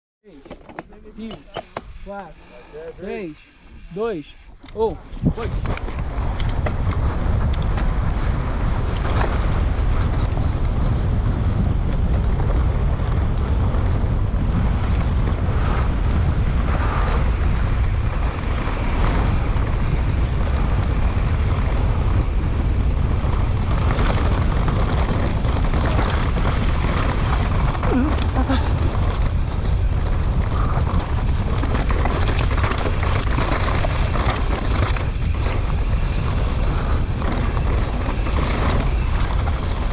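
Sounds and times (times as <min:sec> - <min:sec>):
bike knocks and rattles: 0:00.4 - 0:08.0, 0:23.0 - 0:39.9
wind rushing over microphone: 0:01.2 - 0:39.9.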